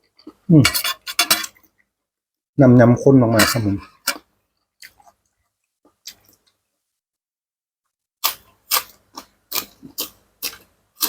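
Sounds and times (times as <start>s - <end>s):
chewing crunchy food: 4.8s - 6.6s, 8.2s - 11.0s.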